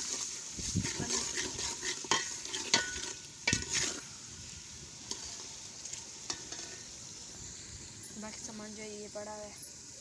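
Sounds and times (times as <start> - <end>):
masala sizzling in oil: 0.0 - 10.0
spoon stirring: 0.8 - 4.0.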